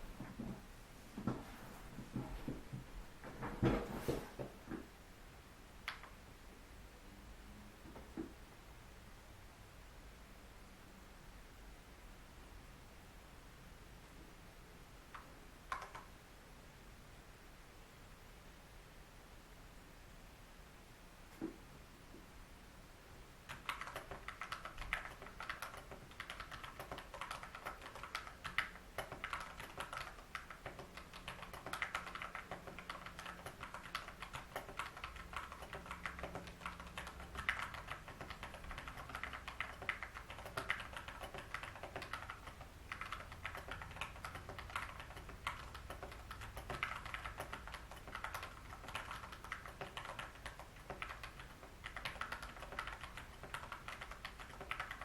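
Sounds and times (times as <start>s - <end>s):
mechanical keyboard typing: 15.1s - 16.1s, 23.5s - 55.0s.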